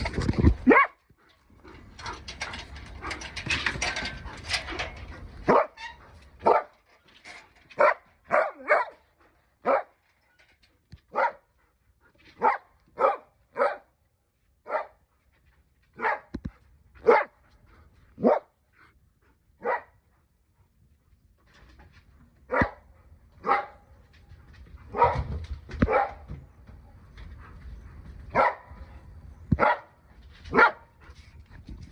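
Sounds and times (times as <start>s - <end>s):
rustling noise: 0.0s - 11.3s
dog barking: 0.6s - 1.0s, 5.5s - 5.8s, 6.4s - 6.7s, 7.8s - 9.0s, 9.6s - 9.9s, 11.1s - 11.4s, 12.4s - 13.9s, 14.6s - 15.0s, 16.0s - 16.3s, 17.0s - 17.3s, 18.2s - 18.5s, 19.6s - 20.0s, 22.5s - 22.8s, 23.4s - 23.8s, 24.9s - 26.3s, 28.3s - 28.7s, 29.6s - 29.9s, 30.5s - 30.9s.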